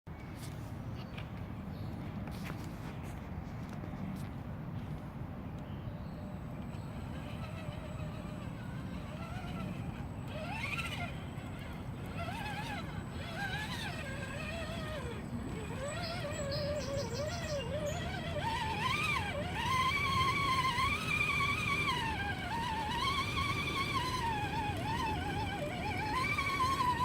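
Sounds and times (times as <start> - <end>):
low drivetrain rumble: 6.0 - 27.0
electric motor whining: 6.4 - 27.0.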